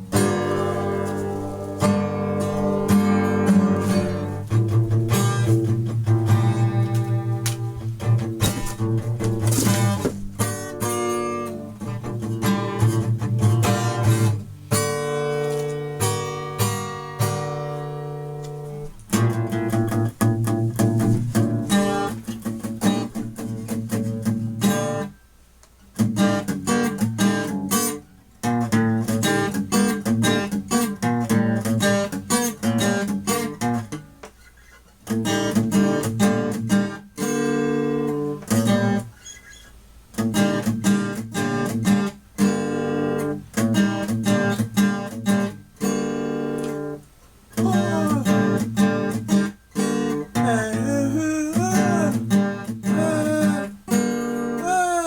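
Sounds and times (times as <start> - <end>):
sliding bending guitar notes: 0.0 - 14.3, 47.6 - 55.0
guitar strumming chords: 0.0 - 25.1, 40.2 - 55.0.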